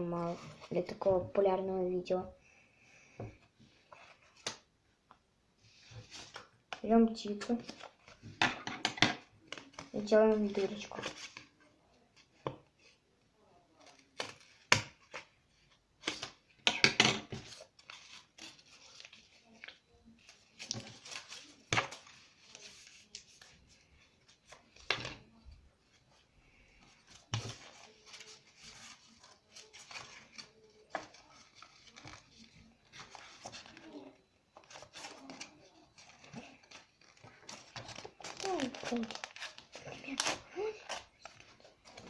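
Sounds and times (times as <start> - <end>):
paper rustling: 17.2 - 42.0.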